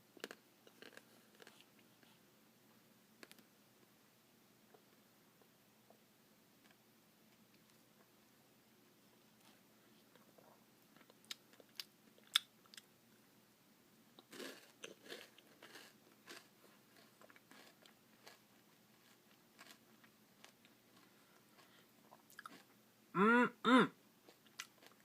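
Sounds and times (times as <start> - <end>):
crunching and chewing: 0.2 - 2.2, 9.4 - 12.9, 14.2 - 22.8, 24.2 - 25.0.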